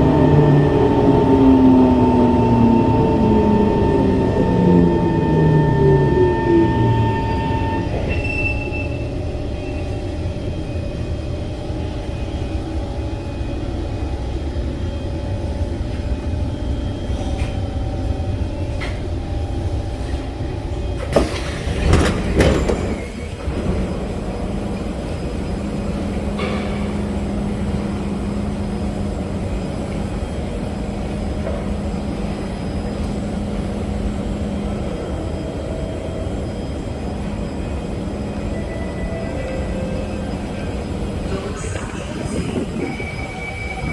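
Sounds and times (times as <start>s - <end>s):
steady hum: 0.0s - 8.2s
train wheels rumbling: 0.0s - 43.9s
train clatter: 17.1s - 43.9s.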